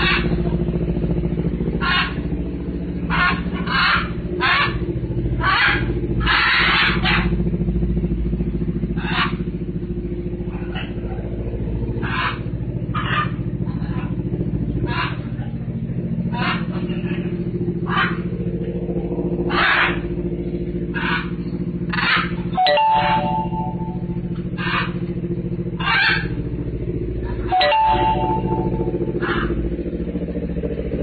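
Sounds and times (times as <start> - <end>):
macaws squawking: 0.0 - 0.4, 1.8 - 2.2, 3.0 - 4.8, 5.4 - 7.3, 8.9 - 9.4, 12.0 - 14.2, 14.8 - 15.4, 16.3 - 18.3, 19.4 - 20.1, 20.9 - 25.1, 25.8 - 26.4, 27.3 - 29.6
low motor hum: 0.0 - 31.0.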